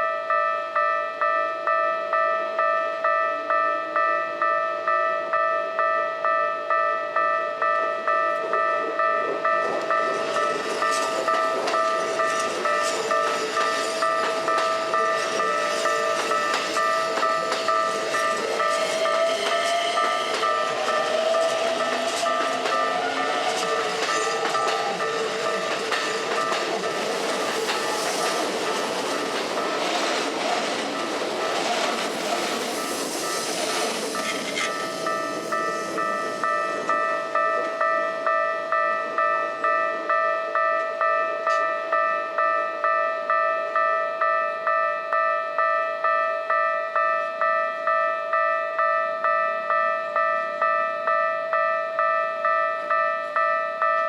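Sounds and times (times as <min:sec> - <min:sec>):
level crossing alarm ringing: 0:00.0 - 0:54.0
train wheels ticking over rail joints: 0:07.6 - 0:42.0
train motor whine rising: 0:08.5 - 0:37.7.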